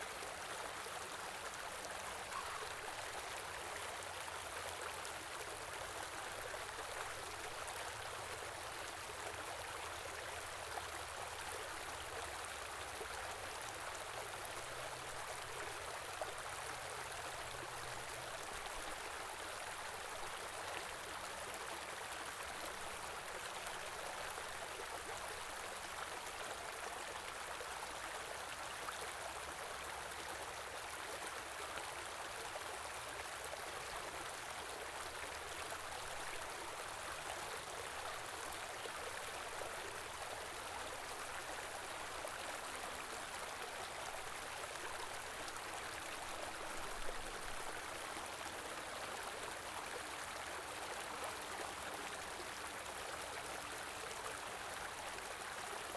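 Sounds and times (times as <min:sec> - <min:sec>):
stream flowing over rocks: 0:00.1 - 0:55.9.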